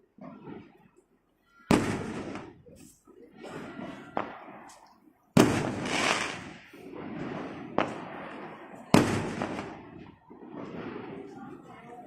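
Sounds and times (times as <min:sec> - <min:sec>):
sharp crack: 0:01.7 - 0:02.6, 0:04.2 - 0:10.1
fireworks bursting: 0:01.7 - 0:12.0
crackling rumble: 0:05.4 - 0:12.0.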